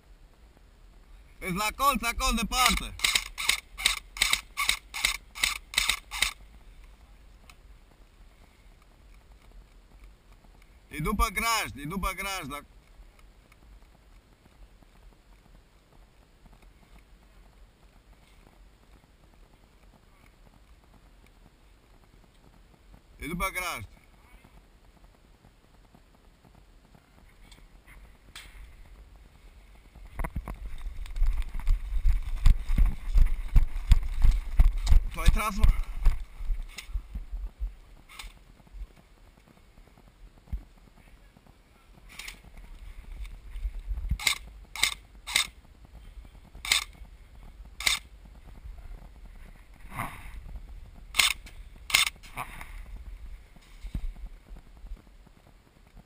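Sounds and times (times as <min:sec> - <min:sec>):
footsteps crunching on dry ground: 0:26.4 - 0:40.9.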